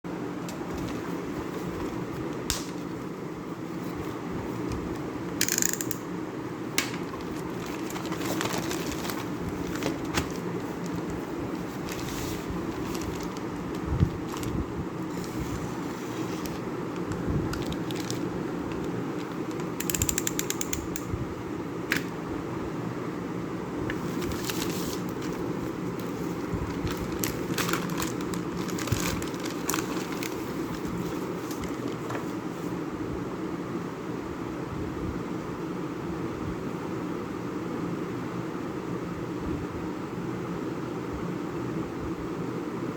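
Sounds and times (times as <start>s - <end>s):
low background hum: 0.1s - 42.9s
metal part clicks: 5.4s - 6.0s
packaging crinkling: 6.8s - 20.0s, 23.9s - 32.2s.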